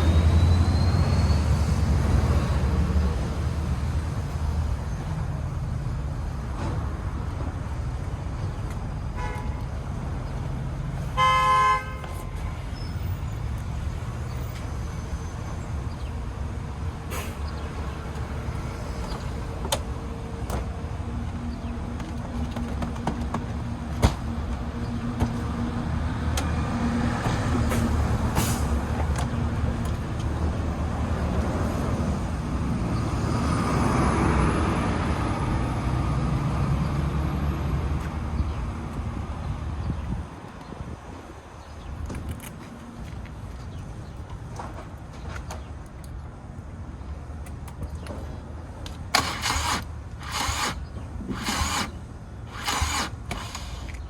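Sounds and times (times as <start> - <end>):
street traffic: 0.0 - 54.0
vehicle horn honk: 11.2 - 12.5
sharp clicks: 48.8 - 54.0.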